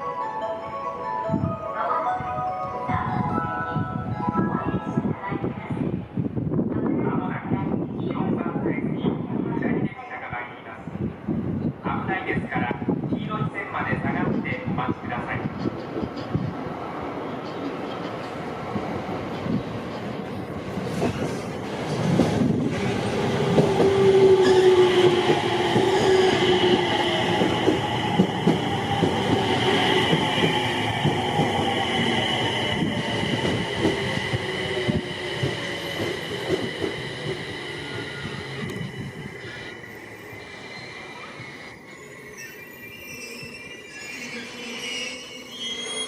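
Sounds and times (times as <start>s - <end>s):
high steady train squeal: 15.3s - 46.0s.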